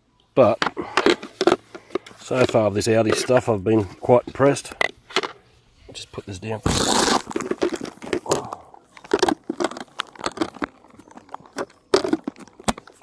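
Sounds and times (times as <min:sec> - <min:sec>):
packaging crinkling: 0:06.7 - 0:13.0.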